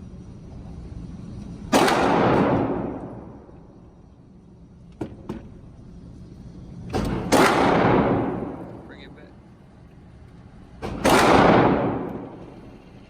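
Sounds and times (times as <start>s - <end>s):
gunshots with echo: 1.7s - 3.4s, 7.1s - 8.7s, 10.8s - 12.4s.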